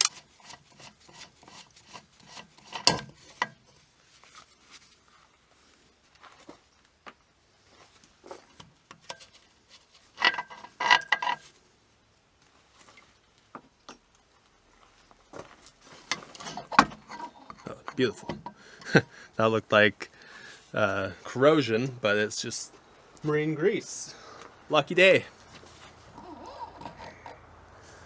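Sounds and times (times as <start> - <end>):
metal clicks and scrapes: 0.0 - 3.7, 15.9 - 19.1.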